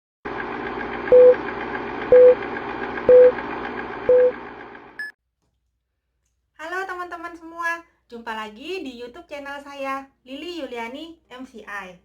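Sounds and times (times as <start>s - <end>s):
short beeps: 4.1s - 4.3s.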